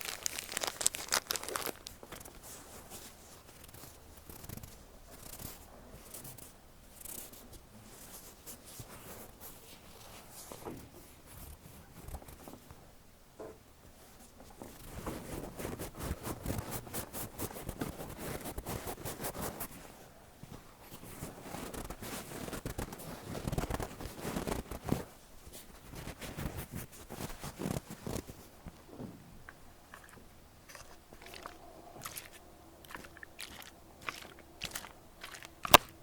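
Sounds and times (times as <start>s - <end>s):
cotton pad rubbing on microphone: 14.7s - 20.0s, 20.8s - 28.6s.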